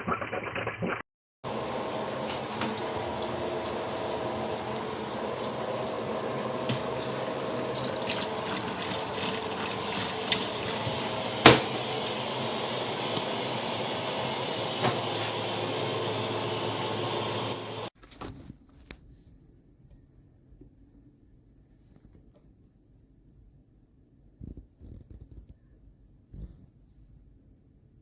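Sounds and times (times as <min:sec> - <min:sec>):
water running from faucet: 0:01.5 - 0:17.9.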